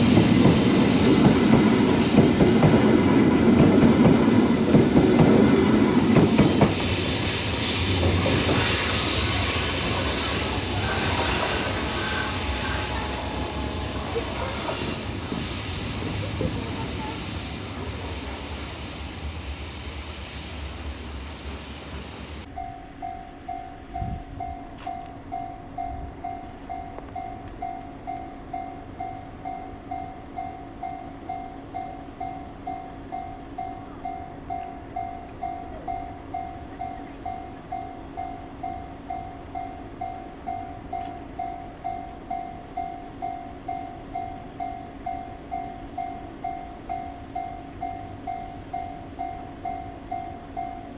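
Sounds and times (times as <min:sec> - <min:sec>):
freight train rumbling: 0:00.0 - 0:50.9
level crossing warning bell: 0:10.5 - 0:15.2, 0:22.4 - 0:50.9.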